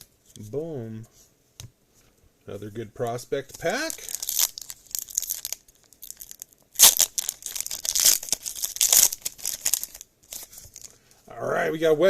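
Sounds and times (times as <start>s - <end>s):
wrapper tearing and crinkling: 3.7s - 11.0s.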